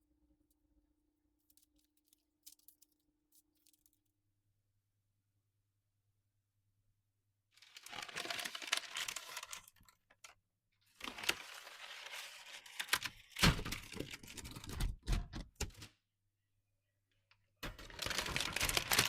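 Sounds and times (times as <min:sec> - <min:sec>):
dry crackling and clicking: 0:01.4 - 0:04.1.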